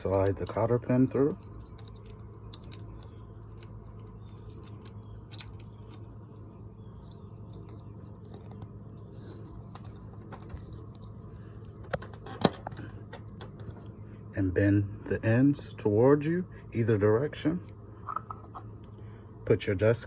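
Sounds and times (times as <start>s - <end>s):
small metal clicks and scraping: 0.0s - 14.0s
steady low hum: 0.0s - 20.0s.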